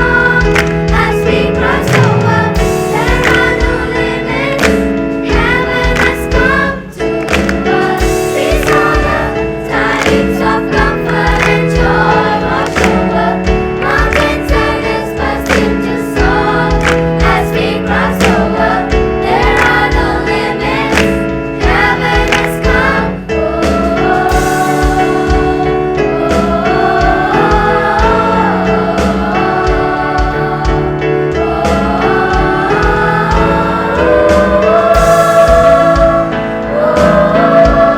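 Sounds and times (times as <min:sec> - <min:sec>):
choir singing in parts: 0:00.0 - 0:37.9
instrumental accompaniment with beat: 0:00.0 - 0:37.9.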